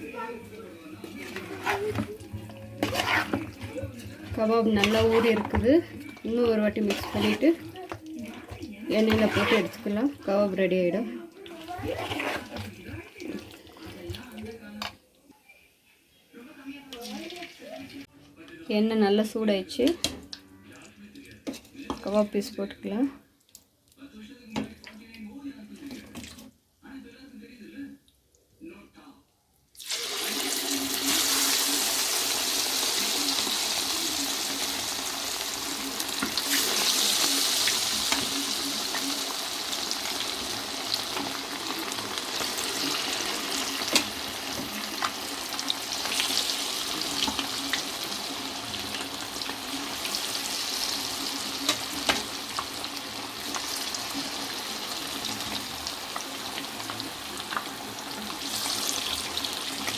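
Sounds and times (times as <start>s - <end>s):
meat deep-frying in hot oil: 29.8s - 59.9s.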